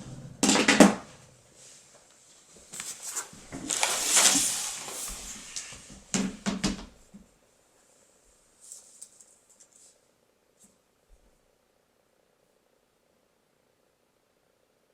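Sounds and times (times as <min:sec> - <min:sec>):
hissy rustle: 0:01.1 - 0:06.1.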